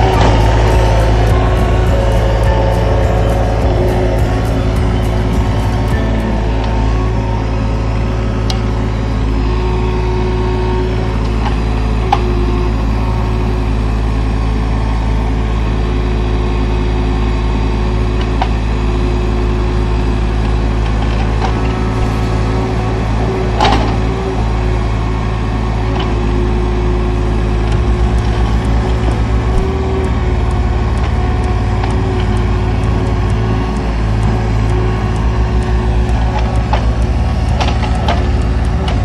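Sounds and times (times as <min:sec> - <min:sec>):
heavy machine engine droning: 0:00.0 - 0:39.0.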